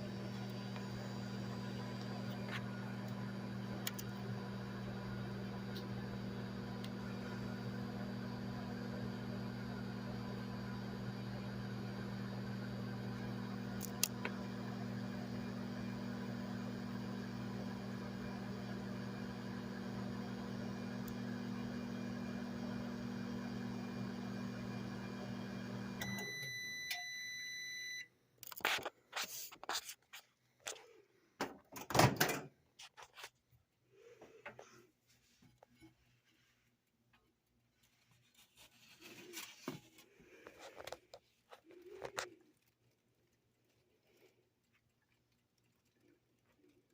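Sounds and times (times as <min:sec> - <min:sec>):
microwave oven humming: 0:00.0 - 0:28.1
microwave beeping: 0:00.0 - 0:28.2.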